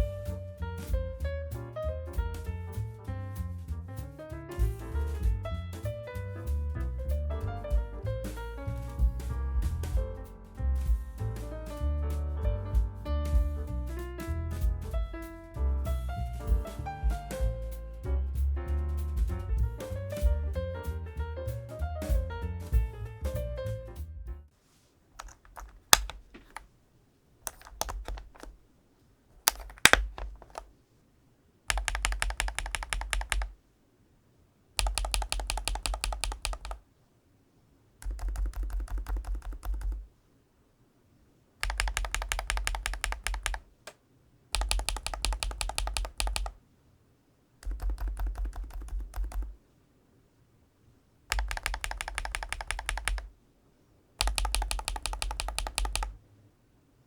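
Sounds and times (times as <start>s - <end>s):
typing on keyboard: 25.2s - 26.7s, 27.4s - 28.6s, 29.4s - 30.7s, 31.7s - 33.6s, 34.8s - 36.8s, 38.0s - 40.1s, 41.6s - 46.6s, 47.6s - 49.6s, 51.3s - 53.3s, 54.2s - 56.2s.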